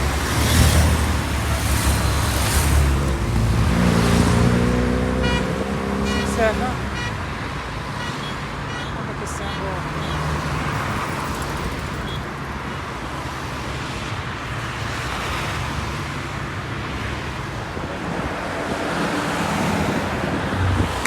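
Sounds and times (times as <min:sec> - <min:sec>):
motor vehicles going by: 0:00.0 - 0:21.0
wind buffeting microphone: 0:17.5 - 0:21.0.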